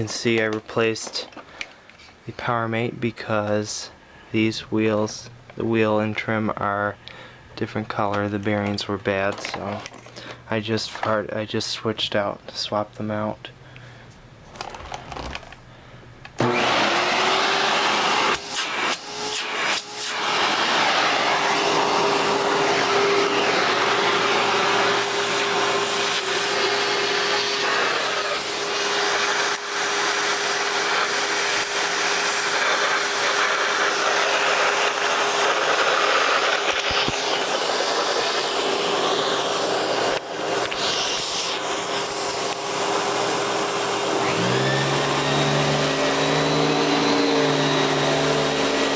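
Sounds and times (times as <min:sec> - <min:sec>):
vacuum cleaner motor whining: 0:16.4 - 0:48.9
loud airy rush: 0:16.6 - 0:28.8.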